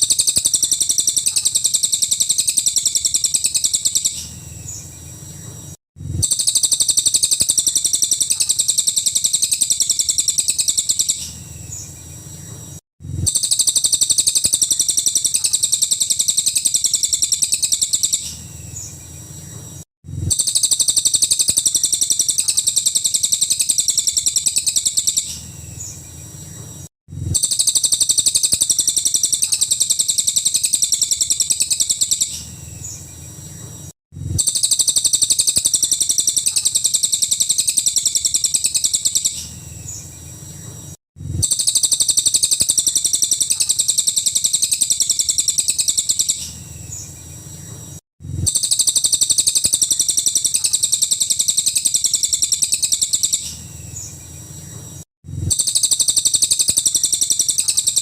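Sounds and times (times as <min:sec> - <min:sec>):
bird singing rattling trills: 0:00.0 - 0:58.0.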